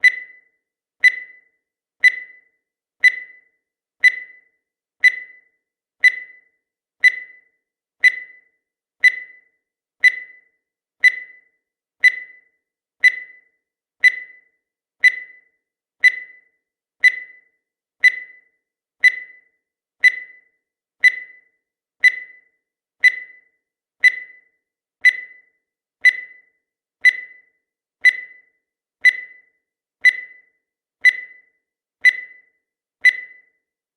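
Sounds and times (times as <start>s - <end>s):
timer ticking: 0.0s - 33.7s.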